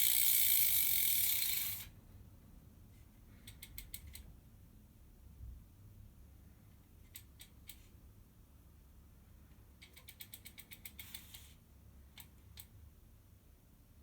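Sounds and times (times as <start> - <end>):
bicycle freehub ratchet clicking: 0.0 - 1.9.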